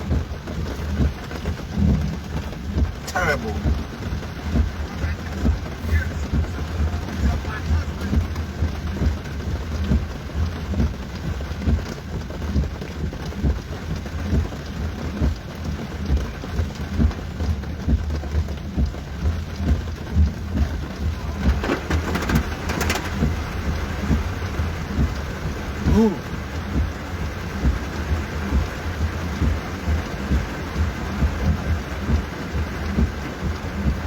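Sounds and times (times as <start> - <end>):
deep rumble: 0.0 - 11.9, 14.2 - 34.0
steady rain: 0.0 - 34.0.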